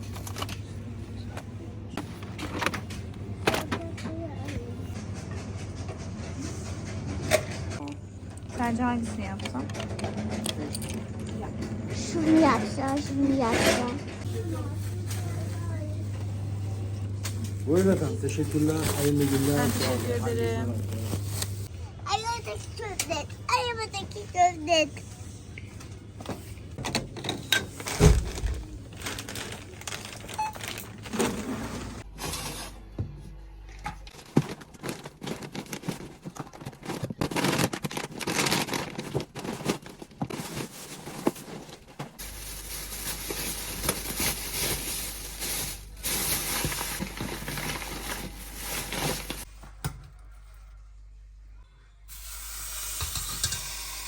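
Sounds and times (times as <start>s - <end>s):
packaging crinkling: 17.9s - 21.7s, 28.0s - 31.2s, 34.2s - 49.5s.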